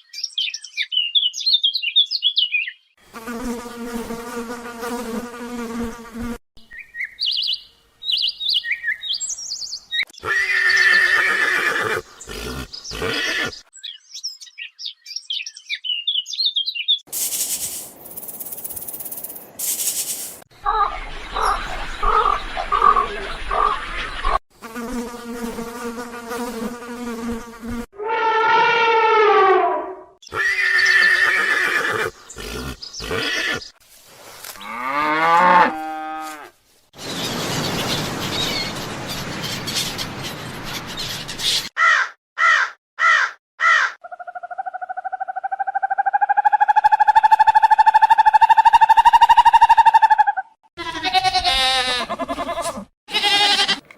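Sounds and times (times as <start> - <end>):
animal hissing: 11.8 - 13.6, 31.9 - 33.6
drawn-out cries falling in pitch: 28.0 - 32.1, 45.4 - 53.8.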